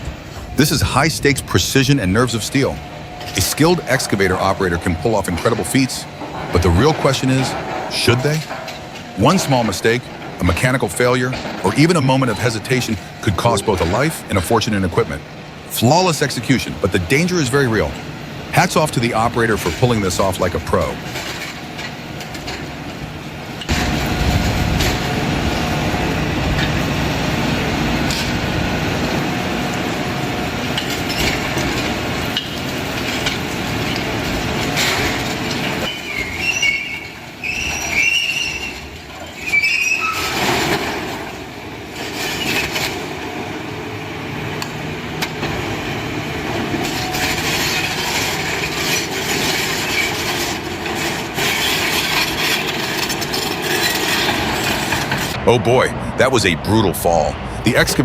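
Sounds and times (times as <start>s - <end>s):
heavy machinery rumbling: 0.0s - 58.0s
metal-on-metal squeals: 35.8s - 41.3s, 46.8s - 55.4s.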